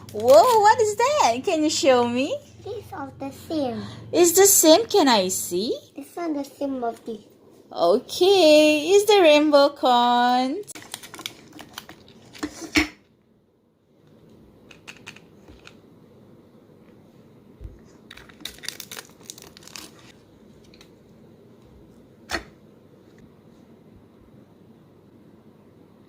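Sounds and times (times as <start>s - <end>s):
plastic wrappers crinkling: 0.0s - 1.0s, 10.7s - 12.7s, 18.1s - 20.2s.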